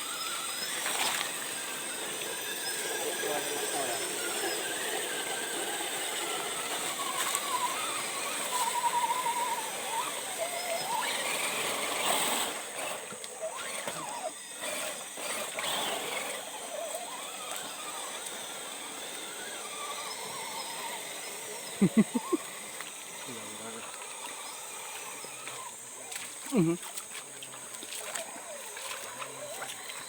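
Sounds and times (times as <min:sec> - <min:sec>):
small electric motor whining: 0:00.0 - 0:30.0
water splashing: 0:00.2 - 0:05.5, 0:21.9 - 0:30.0.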